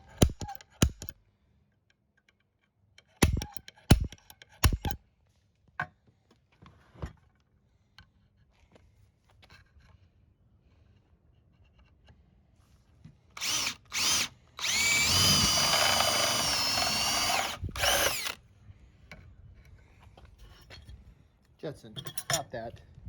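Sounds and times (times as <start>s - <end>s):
electric drill drilling sheet metal: 13.4s - 18.4s.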